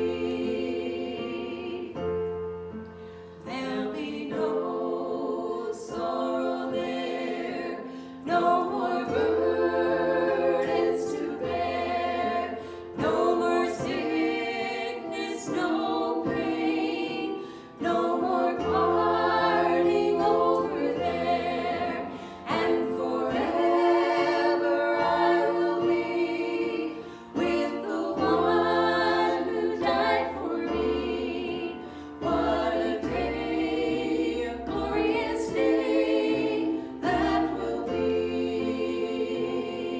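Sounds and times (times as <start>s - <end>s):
choir singing in harmony: 0.0s - 39.9s.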